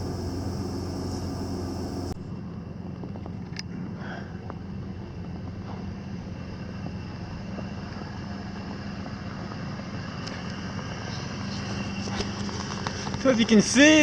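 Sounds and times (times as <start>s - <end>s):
truck engine idling: 0.0s - 2.8s.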